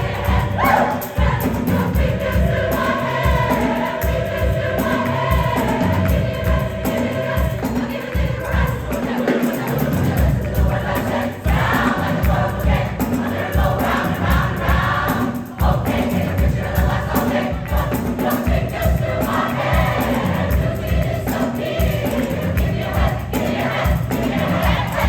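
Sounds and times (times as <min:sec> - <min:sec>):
thumping low beat: 0:00.0 - 0:09.0
choir singing: 0:00.0 - 0:25.0.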